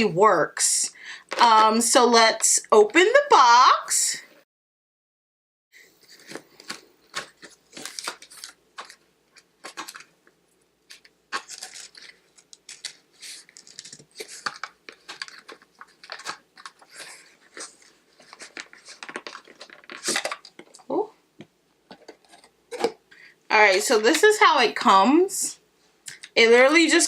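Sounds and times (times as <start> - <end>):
packaging tearing and crinkling: 6.1 - 10.1, 10.8 - 20.8.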